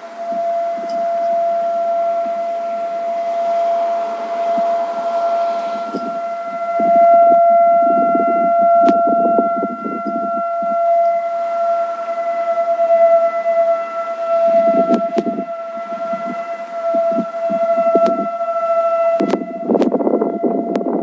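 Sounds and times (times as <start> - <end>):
electronic siren steady tone: 0.0 - 21.0.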